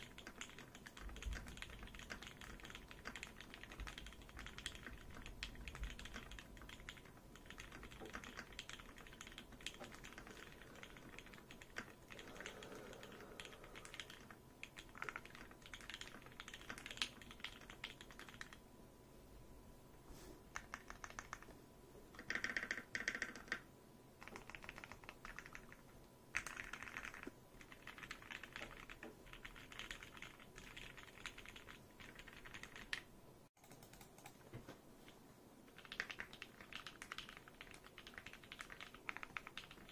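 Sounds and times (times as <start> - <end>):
mechanical keyboard typing: 0.0 - 18.6, 20.5 - 21.5, 22.2 - 34.5, 35.7 - 39.9.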